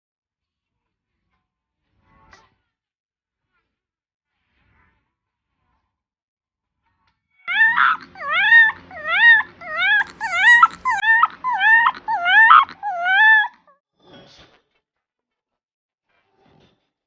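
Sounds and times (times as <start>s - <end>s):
pet animal swooping cries: 7.5s - 13.6s.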